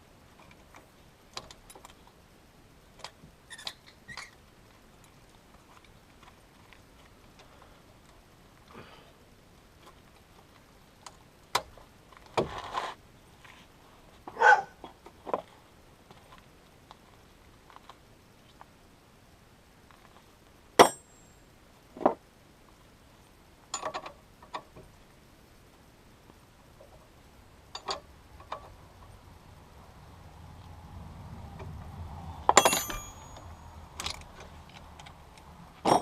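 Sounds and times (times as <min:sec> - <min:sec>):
metallic clank with ring: 0:20.8 - 0:21.4, 0:32.5 - 0:33.9
metal tools clinking and knocking: 0:32.5 - 0:35.1.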